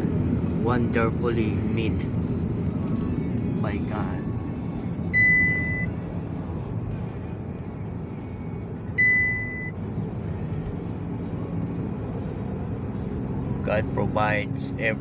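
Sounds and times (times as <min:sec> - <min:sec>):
road and engine rumble: 0:00.0 - 0:15.0
high electronic beeps: 0:05.2 - 0:05.9, 0:09.0 - 0:09.7.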